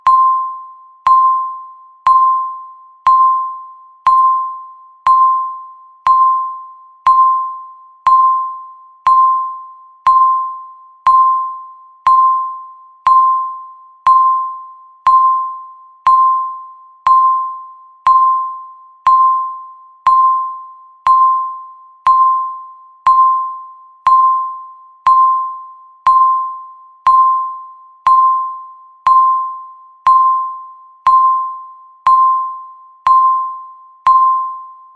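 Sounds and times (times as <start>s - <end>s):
countdown timer beeping: 0.0s - 34.9s.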